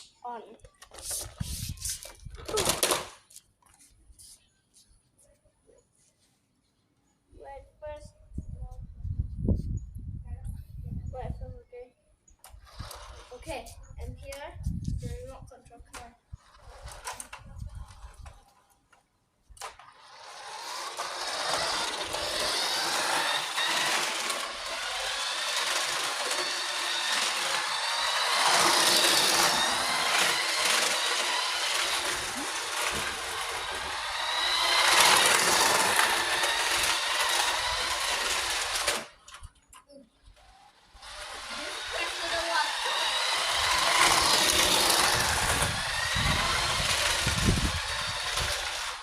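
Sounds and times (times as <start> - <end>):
toy car electric motor whirring: 0.8 - 3.3, 12.4 - 13.7, 16.3 - 18.7, 19.6 - 39.6, 40.3 - 49.0.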